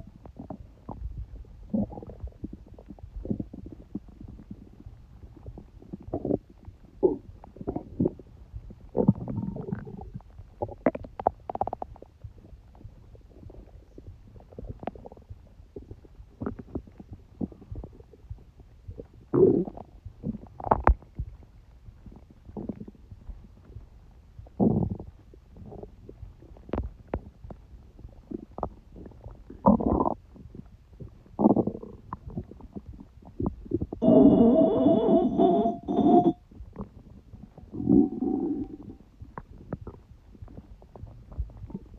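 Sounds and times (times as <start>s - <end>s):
stomach gurgling: 0.0s - 41.9s
whine-like tone: 34.0s - 36.4s.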